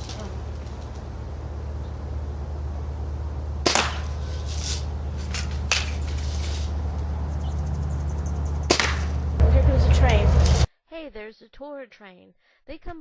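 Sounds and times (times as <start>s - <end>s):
air rifle shots: 3.6s - 6.0s, 8.7s - 9.2s.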